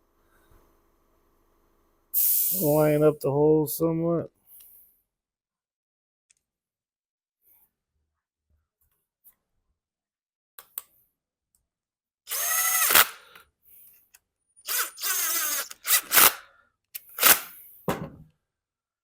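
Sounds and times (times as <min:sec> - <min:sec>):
cordless drill running: 0:12.3 - 0:13.4, 0:14.6 - 0:16.4, 0:17.2 - 0:17.5.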